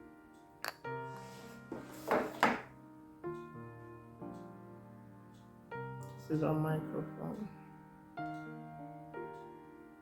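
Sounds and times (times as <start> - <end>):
soft music of held chords: 0.0 - 10.0.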